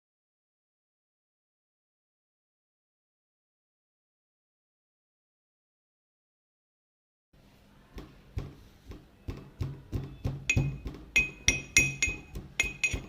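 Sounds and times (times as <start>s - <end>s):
sharp metallic knocks: 8.0s - 13.0s.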